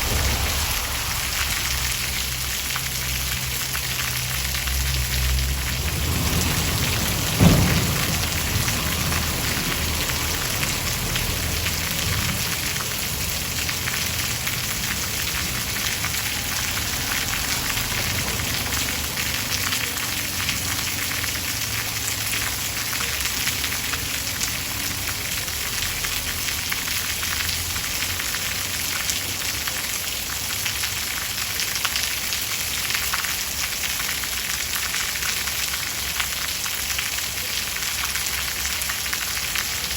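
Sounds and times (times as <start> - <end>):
loud thump: 0.0 - 2.6, 7.2 - 8.9
low rumble: 0.0 - 19.0
steady rain falling: 0.0 - 39.9.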